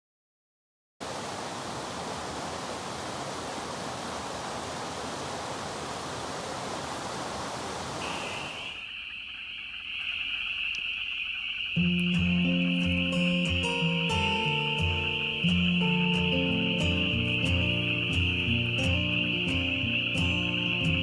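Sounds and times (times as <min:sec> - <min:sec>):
stream water rushing: 0:01.0 - 0:08.8
high-pitched calling chorus: 0:08.0 - 0:21.0.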